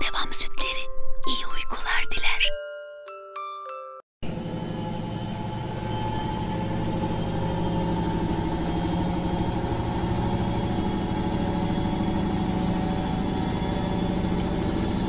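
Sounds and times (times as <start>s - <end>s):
washing machine humming: 4.2s - 15.0s.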